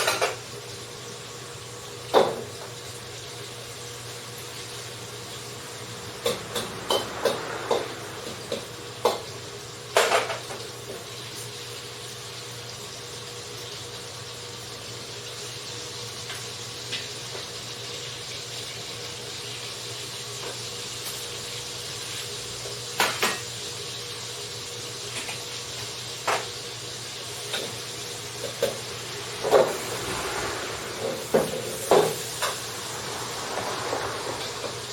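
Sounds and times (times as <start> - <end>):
cookware and utensils clattering: 0.0 - 0.5, 9.9 - 11.1, 23.0 - 23.5
steady hiss: 24.2 - 34.9.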